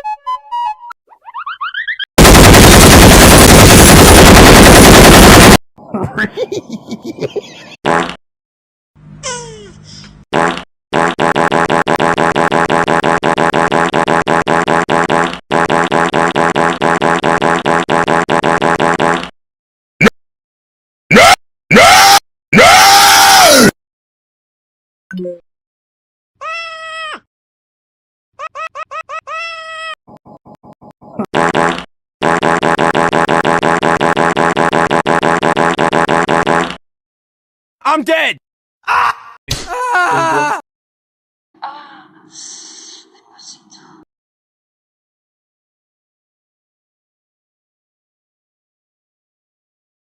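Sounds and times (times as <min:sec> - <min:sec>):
buzzy fart-like sound effect: 0:02.2 - 0:05.6, 0:10.3 - 0:19.3, 0:31.2 - 0:36.8.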